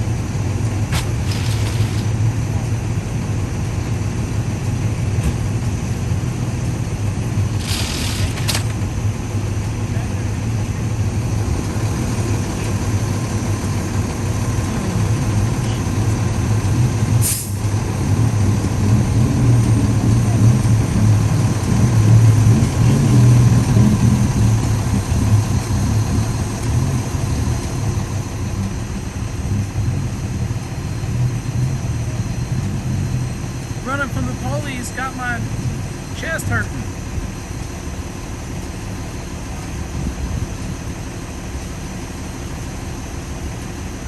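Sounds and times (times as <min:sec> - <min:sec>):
heavy vehicle engine running: 0:00.0 - 0:44.0.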